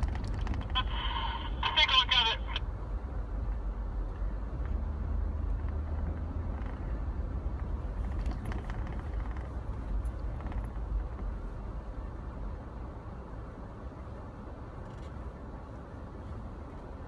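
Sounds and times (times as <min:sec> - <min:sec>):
faint clicks and rattles: 0:00.0 - 0:00.9, 0:08.0 - 0:11.4
vehicle engine rumbling: 0:00.0 - 0:17.0.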